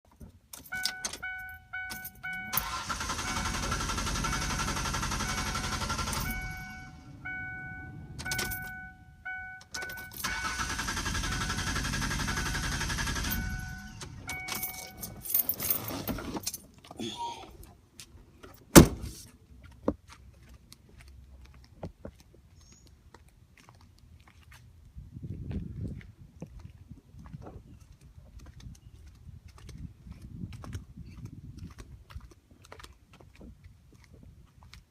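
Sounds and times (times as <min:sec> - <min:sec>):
warning chime beeping: 0:00.7 - 0:03.6, 0:04.2 - 0:11.6, 0:12.2 - 0:15.3
car starter cranking engine: 0:02.4 - 0:07.1, 0:09.7 - 0:15.2
loud thump: 0:18.7 - 0:19.1.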